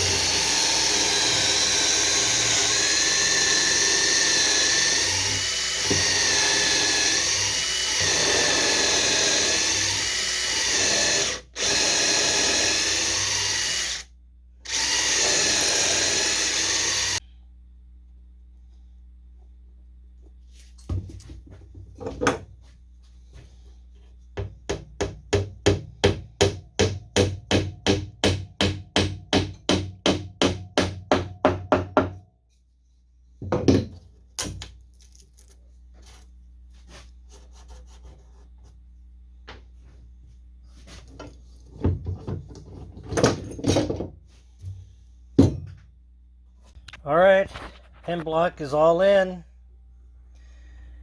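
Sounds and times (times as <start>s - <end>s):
hammer knocking wooden dowels: 24.4s - 32.2s.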